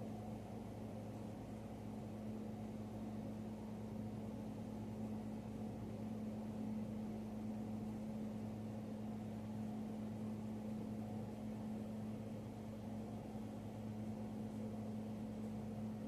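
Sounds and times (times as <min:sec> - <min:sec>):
low mechanical hum: 0:00.0 - 0:16.0.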